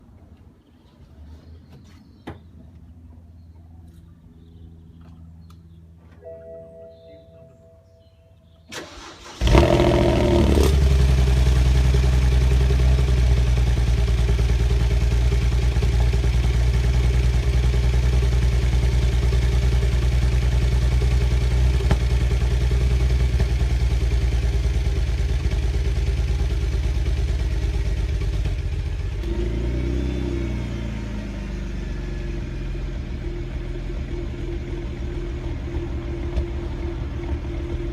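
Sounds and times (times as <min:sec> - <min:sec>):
car engine cranking and idling: 0:08.7 - 0:37.9.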